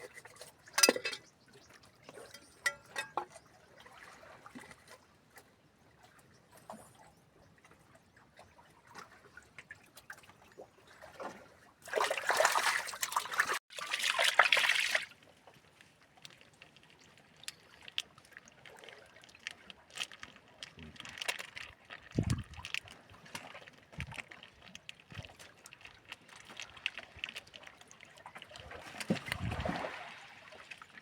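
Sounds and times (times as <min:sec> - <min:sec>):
water splashing and dripping: 0:08.9 - 0:31.0.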